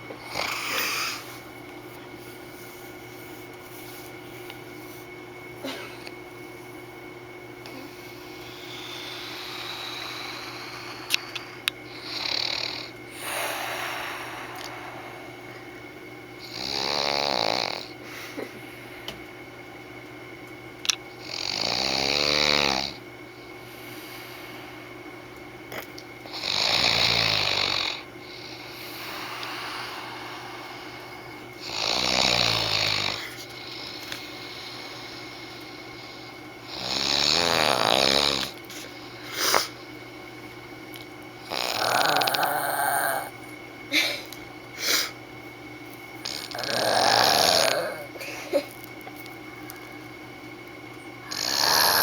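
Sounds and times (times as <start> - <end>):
man snoring: 0.2 - 1.3, 11.9 - 14.7, 16.4 - 18.0, 21.2 - 23.0, 26.3 - 29.9, 31.6 - 35.3, 36.1 - 38.6, 41.4 - 43.4, 46.2 - 48.3, 51.2 - 52.0
loud rasping breaths: 0.2 - 1.5, 7.8 - 15.6, 26.3 - 40.0, 46.2 - 48.6, 51.2 - 52.0.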